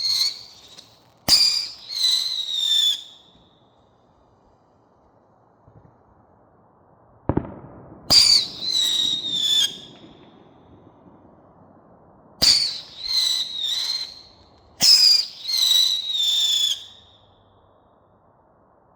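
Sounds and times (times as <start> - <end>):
high-pitched firework whistles: 0.0 - 3.8, 8.1 - 10.4, 12.4 - 17.5.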